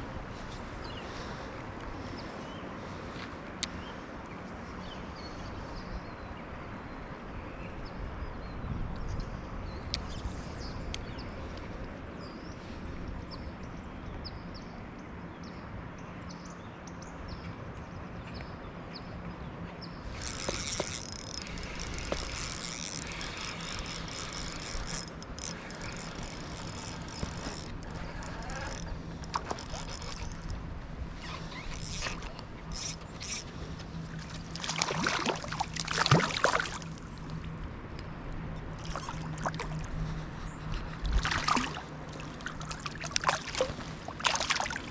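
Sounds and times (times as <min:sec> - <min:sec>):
quick clicking and rattling: 0:20.1 - 0:30.6
river water rushing: 0:31.1 - 0:37.9, 0:38.7 - 0:44.9.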